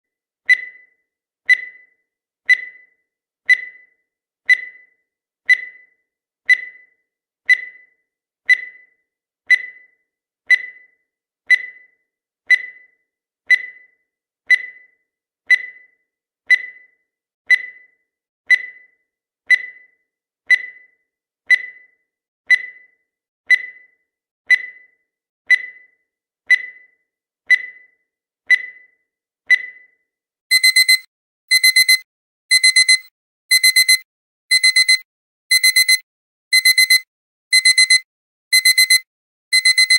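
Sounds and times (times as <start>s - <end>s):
countdown timer ticking: 30.5s - 39.9s.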